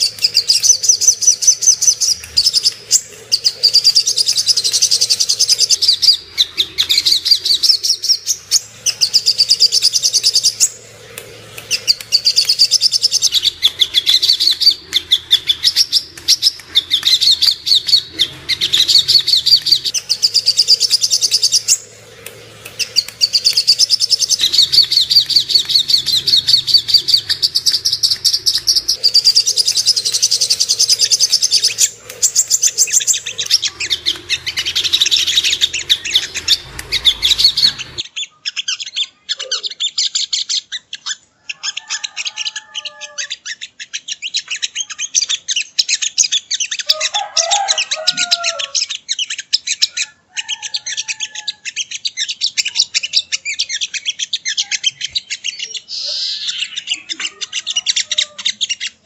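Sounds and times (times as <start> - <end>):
bird singing rapid high notes: 0.0 - 38.2.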